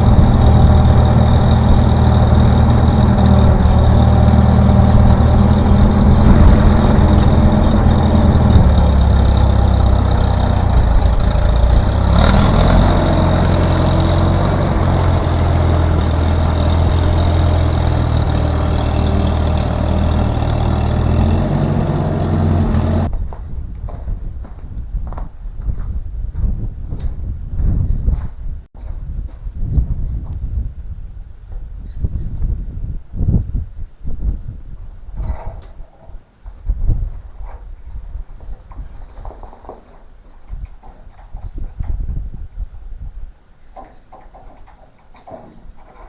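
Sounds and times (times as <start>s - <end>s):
heavy engine running: 0.0s - 23.1s.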